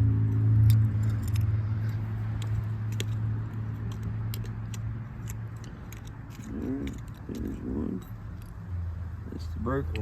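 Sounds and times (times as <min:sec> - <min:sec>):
low engine hum: 0:00.0 - 0:10.0.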